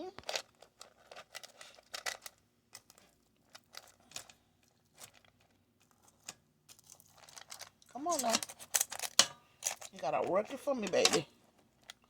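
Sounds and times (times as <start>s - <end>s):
utensil tapping fryer basket: 10.1s - 11.3s.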